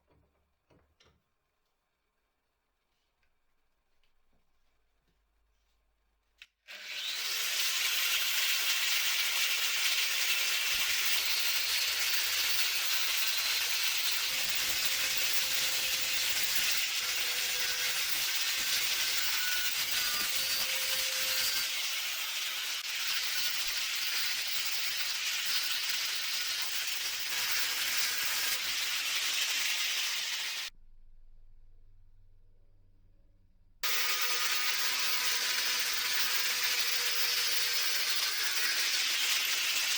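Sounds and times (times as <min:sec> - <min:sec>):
angle grinder cutting steel: 0:06.7 - 0:30.7, 0:33.8 - 0:39.9.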